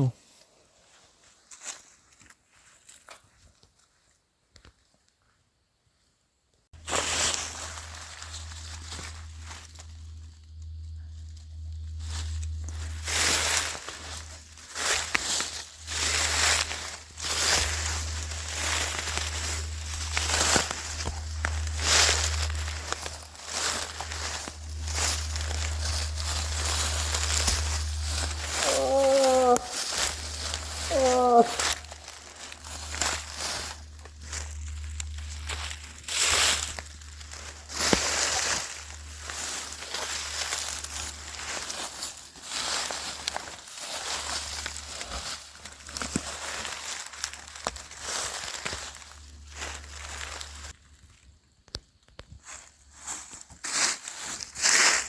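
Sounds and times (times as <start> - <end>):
footsteps crunching through undergrowth: 0.0 - 4.8, 6.7 - 55.0
branches rustling and scraping: 0.0 - 4.9, 6.8 - 55.0
low hum: 6.8 - 50.7
steady low hum: 7.3 - 28.7.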